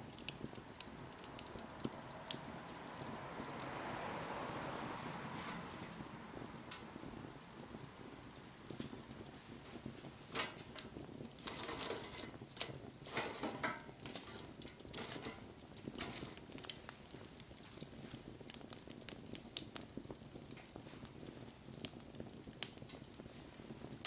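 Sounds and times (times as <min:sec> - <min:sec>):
wood fire crackling: 0:00.0 - 0:24.0.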